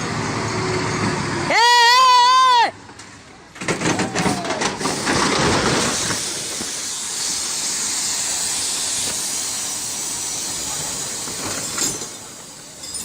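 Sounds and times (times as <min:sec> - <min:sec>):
knocks and clatters: 0:03.0 - 0:06.7
steady hiss: 0:05.9 - 0:12.8.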